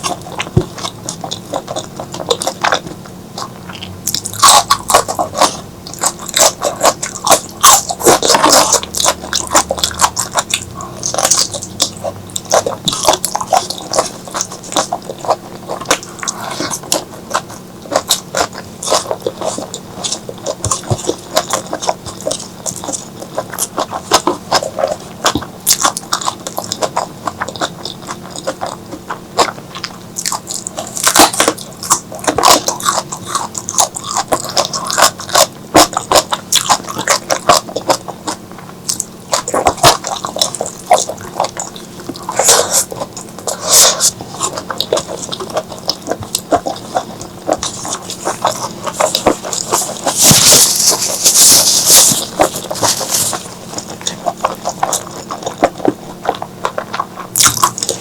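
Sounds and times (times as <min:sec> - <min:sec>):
wet chewing and lip-smacking: 0:00.0 - 0:58.0
slurping: 0:38.9 - 0:58.0.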